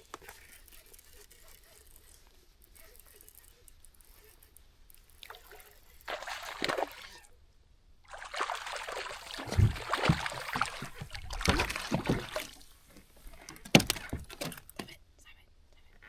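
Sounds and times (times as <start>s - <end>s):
water splashing and trickling: 3.1s - 7.3s, 8.0s - 14.4s.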